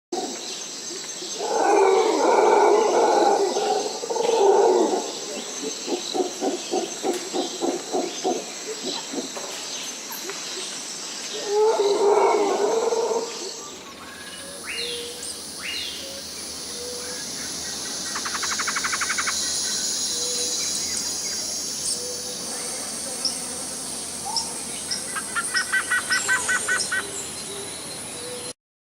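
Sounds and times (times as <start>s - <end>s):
birds chirping: 0.2s - 28.6s
insect chorus: 0.2s - 28.6s
loud animal calls: 11.4s - 27.7s
high-pitched insect drone: 11.5s - 28.5s
rhythmic pulsed calls: 14.1s - 27.6s
fast bird trills: 16.0s - 21.3s.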